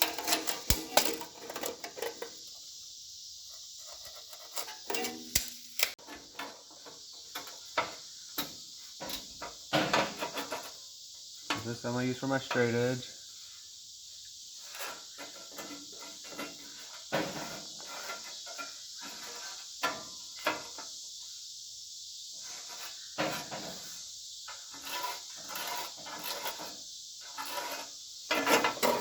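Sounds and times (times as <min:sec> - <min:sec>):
sheet metal clicks taps and scrapes: 0:00.0 - 0:02.4, 0:03.9 - 0:06.6
steady high hiss: 0:00.0 - 0:29.0.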